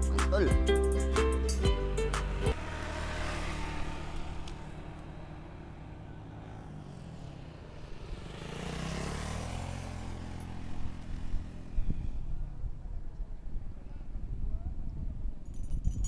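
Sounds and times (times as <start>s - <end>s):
vehicle engine passing by: 1.8s - 12.8s.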